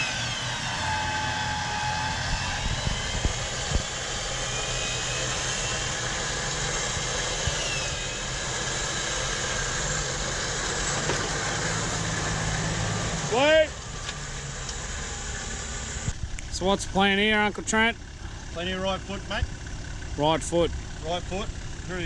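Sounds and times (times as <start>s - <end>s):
high whine sliding in pitch: 0.0s - 16.2s
engine idling: 0.0s - 22.0s
light engine knocks: 10.6s - 12.7s.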